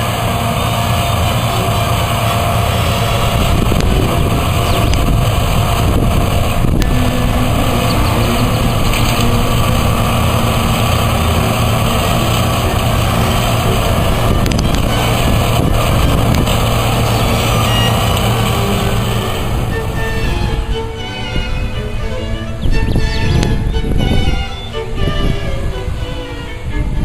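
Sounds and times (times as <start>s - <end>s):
combine harvester engine drone: 0.0s - 27.0s.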